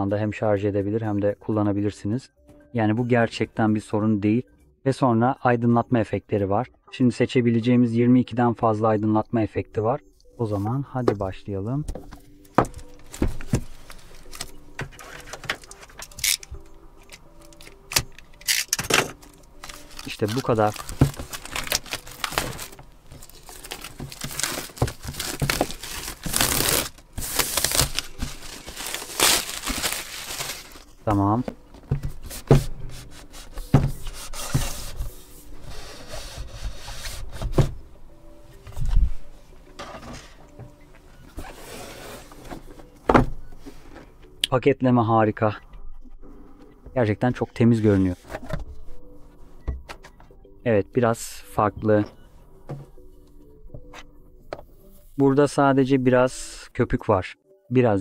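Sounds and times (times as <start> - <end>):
cardboard sliding and rustling: 41.4 - 42.7.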